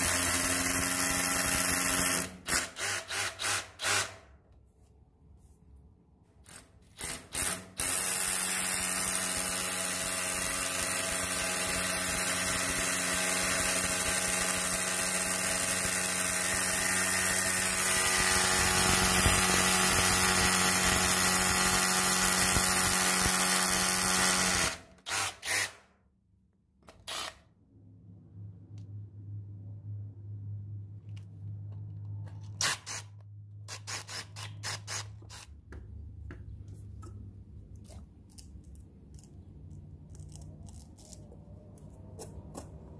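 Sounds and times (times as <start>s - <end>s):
cordless rotary hammer running: 0.0s - 4.1s, 7.0s - 25.7s.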